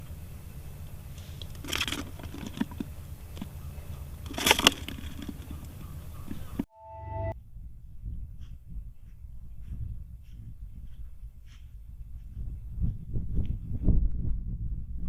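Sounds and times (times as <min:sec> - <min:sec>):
crunching handling noises: 0:01.1 - 0:06.6.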